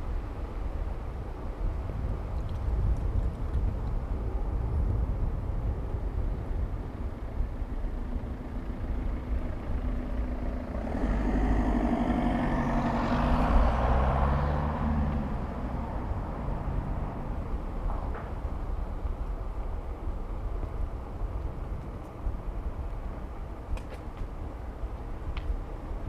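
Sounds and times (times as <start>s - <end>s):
vehicle passing by: 8.3s - 18.2s.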